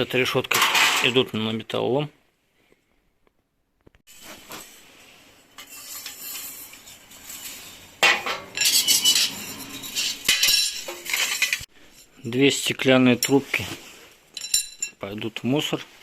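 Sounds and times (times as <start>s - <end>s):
sheet metal parts clattering: 0.4s - 1.3s, 4.1s - 12.4s, 14.3s - 15.0s.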